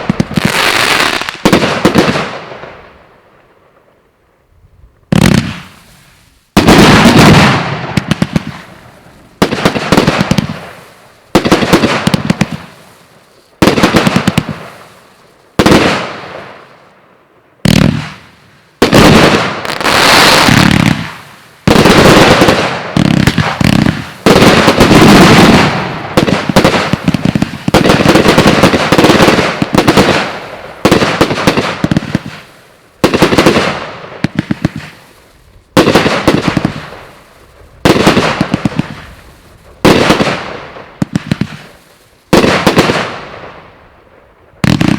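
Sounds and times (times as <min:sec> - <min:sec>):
crackling firework tail: 0:00.0 - 0:44.9.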